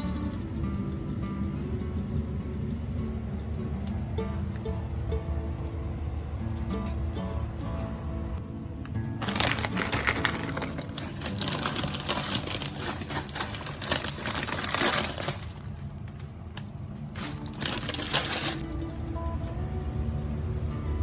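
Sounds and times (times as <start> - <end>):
faint background music: 0.0 - 21.0
crinkling crushing noise: 9.2 - 18.6.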